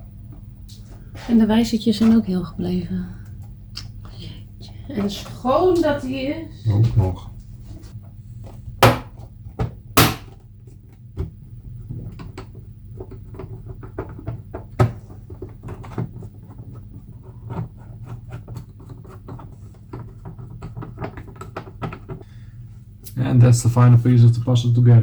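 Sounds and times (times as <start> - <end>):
steady low hum: 0.0 - 10.4, 22.2 - 25.0
plastic snapping: 10.0 - 10.4.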